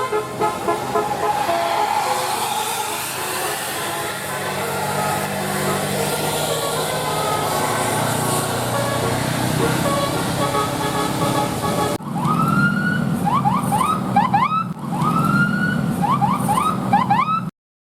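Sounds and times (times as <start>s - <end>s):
musical air horn tune: 0.0s - 12.0s.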